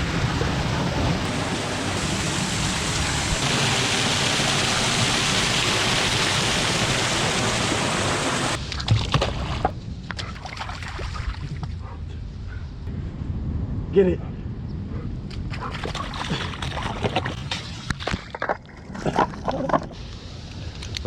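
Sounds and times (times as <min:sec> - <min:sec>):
ocean surf washing on beach: 0:00.0 - 0:08.6.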